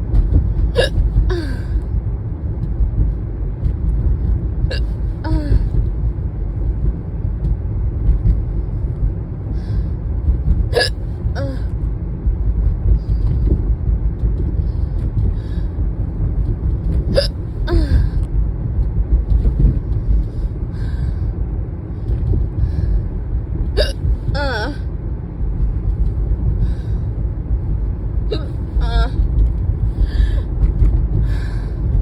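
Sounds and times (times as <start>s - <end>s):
car driving rumble: 0.0s - 32.0s
person hiccuping: 0.8s - 1.0s, 4.7s - 5.6s, 10.8s - 11.6s, 23.8s - 24.8s, 28.3s - 29.2s.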